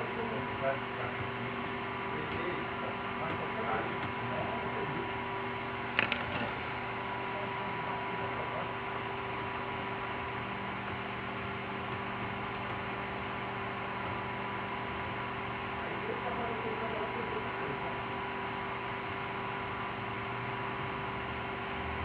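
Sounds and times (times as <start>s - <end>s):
electrical hum with hiss: 0.0s - 22.0s.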